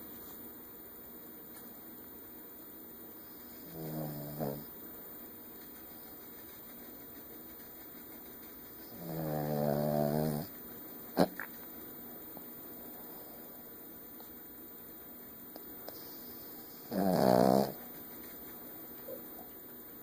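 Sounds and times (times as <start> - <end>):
dog snoring: 3.6 - 4.7, 8.8 - 10.5, 15.9 - 17.8.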